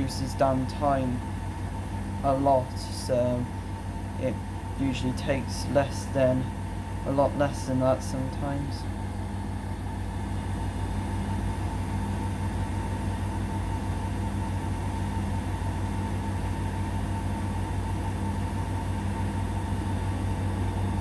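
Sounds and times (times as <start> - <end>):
washing machine spin cycle: 0.0 - 21.0.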